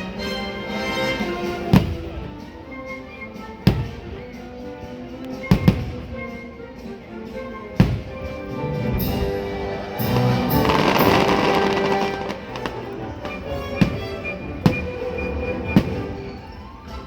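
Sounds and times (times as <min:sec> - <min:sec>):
fireworks bursting: 0:01.6 - 0:02.4, 0:05.5 - 0:06.2, 0:08.9 - 0:16.6
show music over loudspeakers: 0:07.8 - 0:17.0.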